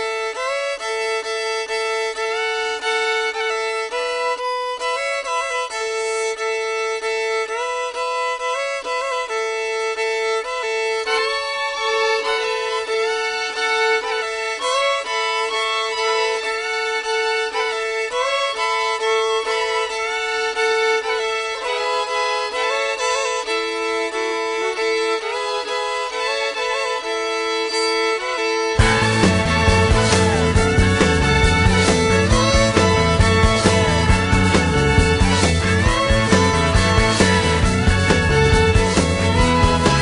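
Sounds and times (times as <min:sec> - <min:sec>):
solo fiddle playing blues: 0:00.0 - 0:40.0
band with drums and bass: 0:28.8 - 0:40.0.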